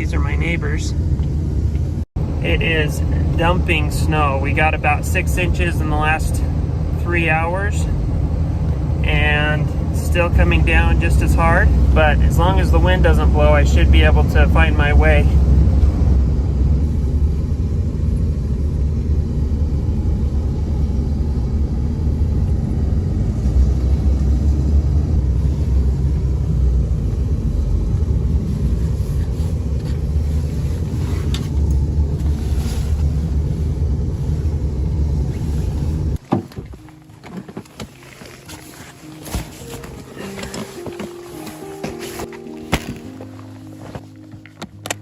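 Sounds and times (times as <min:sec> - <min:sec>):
car driving rumble inside cabin: 0:00.0 - 0:45.0
faint music: 0:36.5 - 0:45.0.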